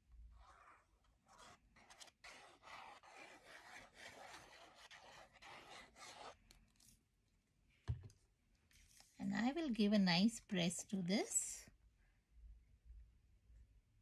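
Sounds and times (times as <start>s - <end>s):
rubbing on paper: 0.2s - 6.4s.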